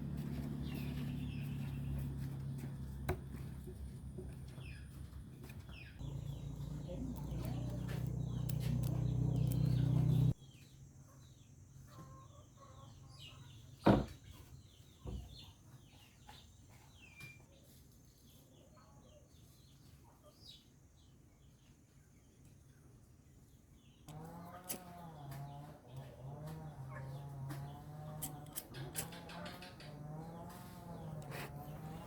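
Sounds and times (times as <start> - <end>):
small birds chirping: 0.1 - 32.0
low machine hum: 6.0 - 10.4
chickens clucking: 24.1 - 32.0.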